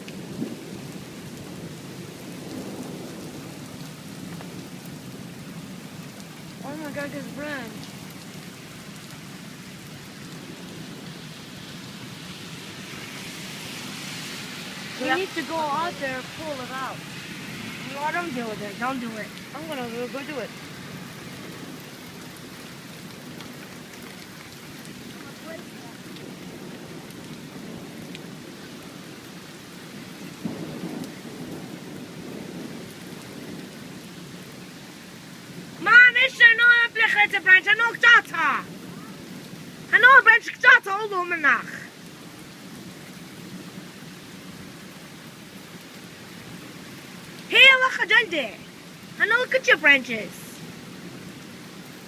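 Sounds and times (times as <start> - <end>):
heavy rain pouring: 0.0 - 52.0
rumble of thunder: 0.1 - 5.4, 30.2 - 34.6.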